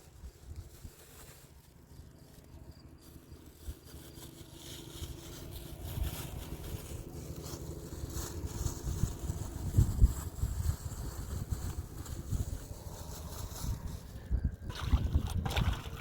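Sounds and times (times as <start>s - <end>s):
wind buffeting microphone: 5.0s - 16.0s.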